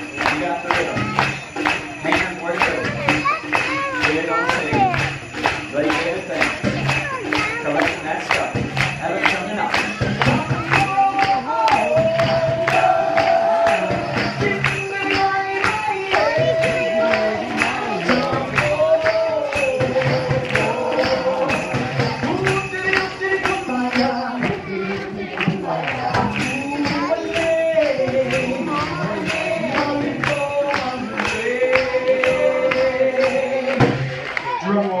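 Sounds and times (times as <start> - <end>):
jingling hand percussion: 0.0 - 35.0.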